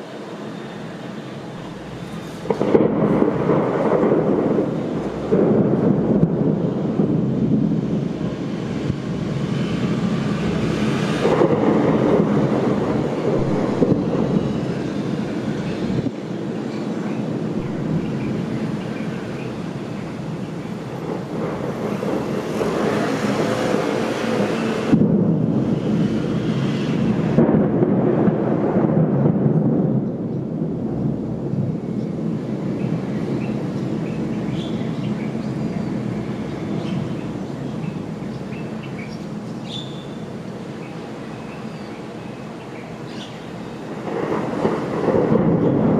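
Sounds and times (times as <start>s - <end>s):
rolling thunder: 1.3s - 40.9s, 42.0s - 45.9s.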